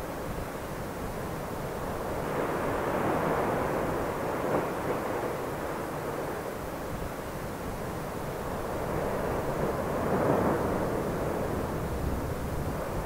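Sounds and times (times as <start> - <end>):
volcanic eruption roar: 7.8 - 13.0.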